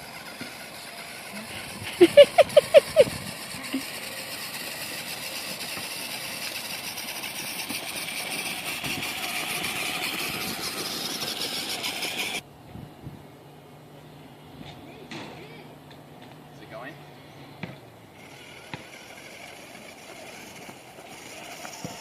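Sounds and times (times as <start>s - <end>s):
toy cart motor and wheels rolling: 0.0s - 12.4s, 18.1s - 22.0s.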